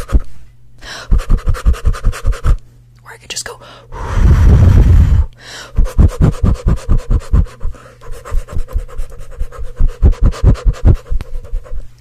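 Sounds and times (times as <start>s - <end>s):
fan gusts buffeting microphone: 4.0s - 11.8s.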